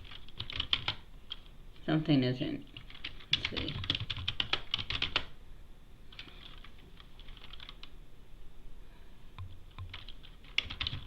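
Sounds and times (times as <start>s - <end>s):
computer keyboard typing: 0.0s - 1.5s, 2.7s - 5.3s, 6.1s - 7.9s, 9.7s - 11.0s.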